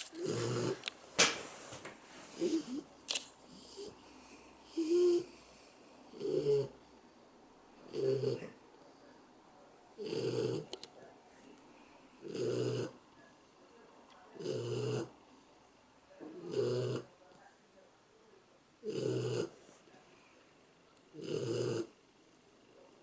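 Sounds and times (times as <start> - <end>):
dog snoring: 0.0 - 0.9, 2.3 - 2.9, 3.5 - 5.5, 6.1 - 6.8, 7.8 - 8.6, 10.0 - 10.7, 12.2 - 13.0, 14.4 - 15.1, 16.3 - 17.1, 18.8 - 19.6, 21.1 - 22.0.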